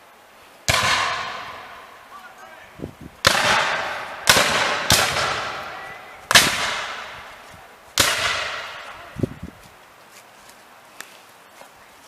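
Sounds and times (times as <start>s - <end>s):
musket shots echoing: 0.7s - 1.9s, 3.2s - 7.2s, 8.0s - 8.9s.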